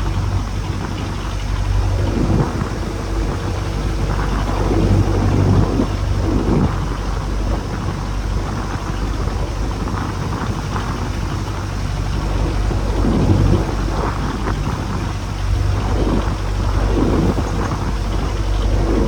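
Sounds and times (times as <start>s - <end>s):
boat engine running: 0.0s - 19.0s
waves on open water: 0.0s - 19.0s
wind: 0.0s - 19.0s.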